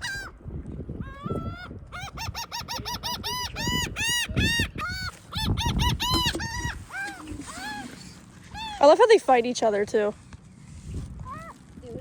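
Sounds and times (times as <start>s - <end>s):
gulls laughing calls: 0.0s - 0.4s, 1.1s - 9.3s
wind rumble on microphone: 0.0s - 12.0s.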